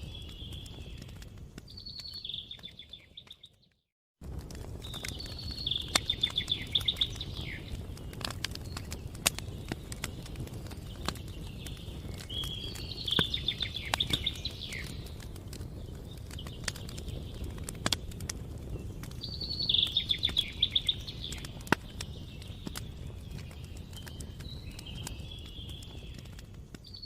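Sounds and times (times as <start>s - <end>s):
campfire crackling and popping: 0.0s - 27.0s
songbird trilling: 5.3s - 7.7s, 12.3s - 15.0s, 19.3s - 21.6s.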